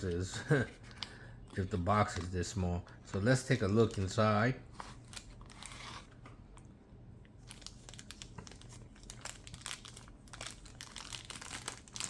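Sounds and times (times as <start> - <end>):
packaging crinkling and crackling: 3.1 - 6.2, 7.4 - 12.0.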